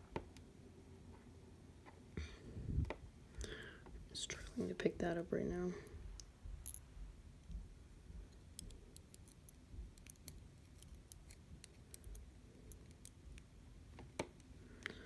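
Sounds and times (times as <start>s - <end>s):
small clicks of metal lock pins: 8.3s - 13.5s.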